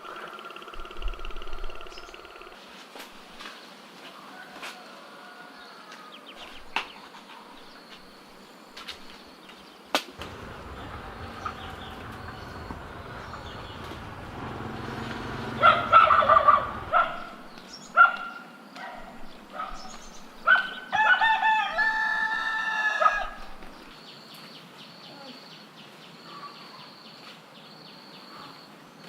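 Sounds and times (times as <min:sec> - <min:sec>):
birds calling: 0:00.0 - 0:02.6, 0:06.0 - 0:21.7
low rumble: 0:10.2 - 0:17.6.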